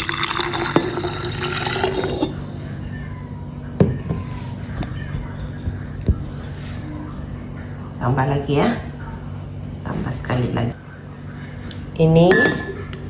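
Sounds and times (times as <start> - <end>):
water pouring into jug: 0.0 - 2.7.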